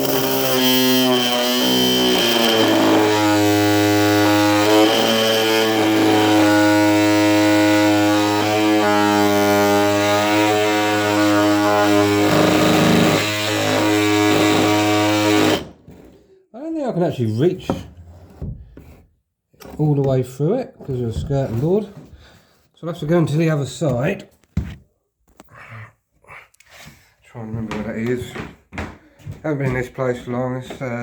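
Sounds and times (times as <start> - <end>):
blade cutting through nail: 0.0 - 15.6
oscillating multi-tool buzzing: 0.0 - 15.6.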